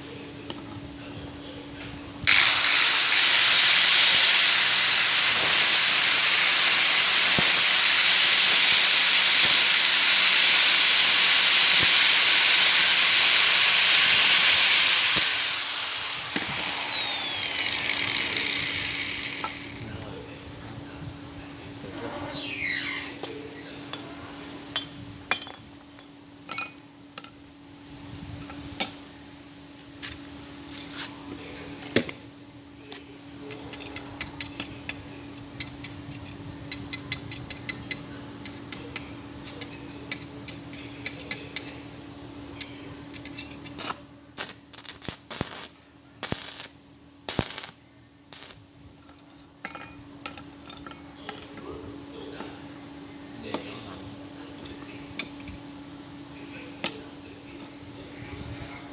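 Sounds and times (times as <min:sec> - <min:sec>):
steady hum: 0:00.0 - 0:58.9
metallic clinks and knocks: 0:25.3 - 0:27.4, 0:49.0 - 0:51.7.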